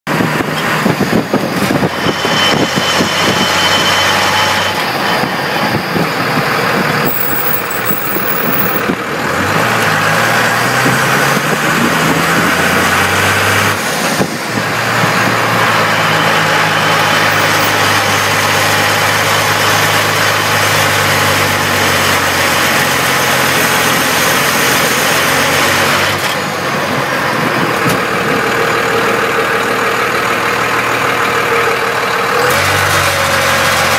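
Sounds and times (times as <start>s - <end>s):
diesel engine lugging: 0.1s - 33.9s
road noise: 0.1s - 33.9s
rattle: 7.0s - 8.8s.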